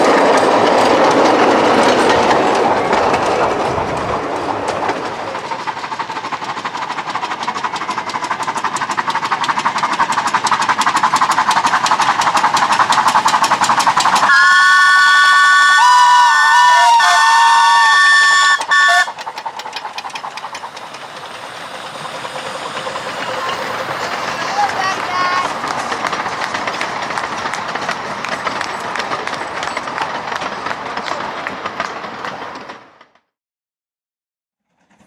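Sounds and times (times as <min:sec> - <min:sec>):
steam locomotive exhaust beats: 0:00.0 - 0:33.0
steam whistle chord: 0:14.3 - 0:19.1.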